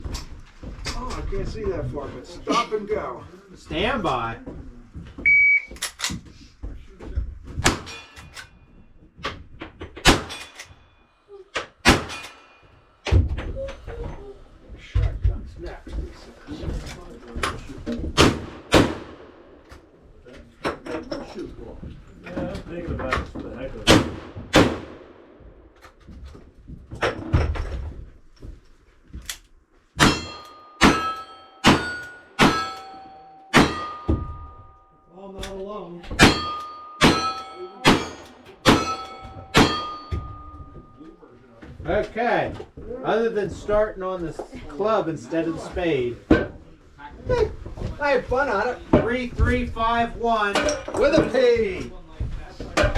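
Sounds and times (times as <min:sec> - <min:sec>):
gunshots: 0:10.0 - 0:10.6, 0:11.8 - 0:12.5, 0:18.2 - 0:19.5, 0:23.8 - 0:25.3, 0:30.0 - 0:32.9, 0:33.5 - 0:34.1, 0:36.2 - 0:40.1
steel targets ringing: 0:30.0 - 0:34.9, 0:36.2 - 0:40.7.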